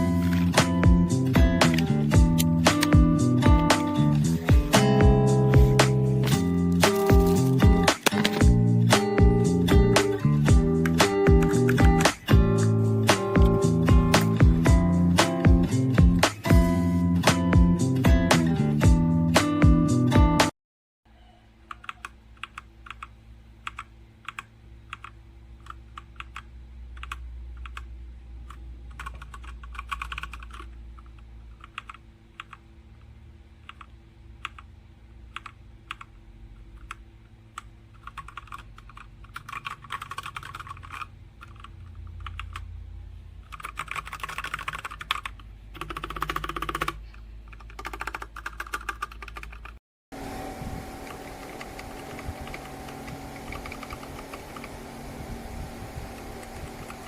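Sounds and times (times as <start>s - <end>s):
mechanical keyboard typing: 1.6s - 4.0s, 6.8s - 8.5s, 10.8s - 12.3s, 21.7s - 32.6s, 33.6s - 34.7s, 35.3s - 36.1s, 36.7s - 42.6s, 43.4s - 49.8s, 51.0s - 54.8s
steady low hum: 50.2s - 57.0s.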